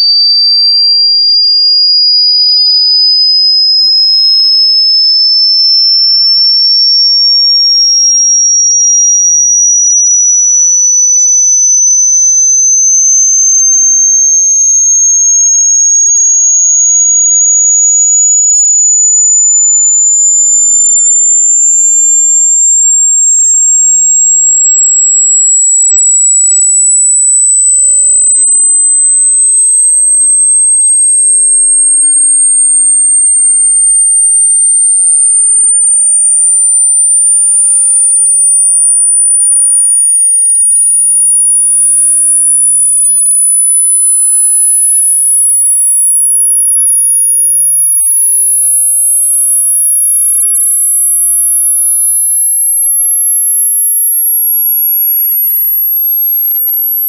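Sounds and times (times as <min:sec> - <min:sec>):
rising electronic tone sweep: 0:19.0 - 0:25.0.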